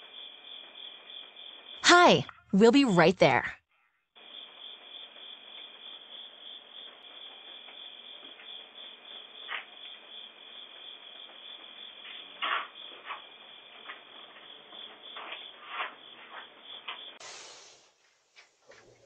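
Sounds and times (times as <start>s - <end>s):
crickets chirping: 0.0s - 1.8s, 4.2s - 17.2s.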